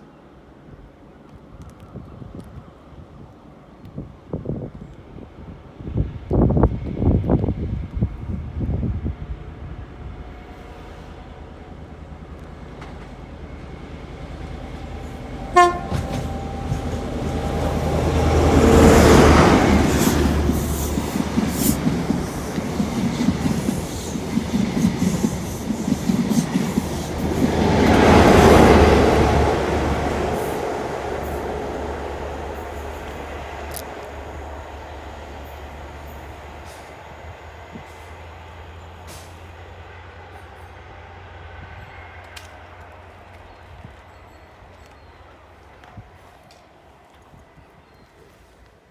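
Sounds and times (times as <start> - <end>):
train passing with rumble: 0.2 - 48.9
train horn blast: 15.4 - 19.2.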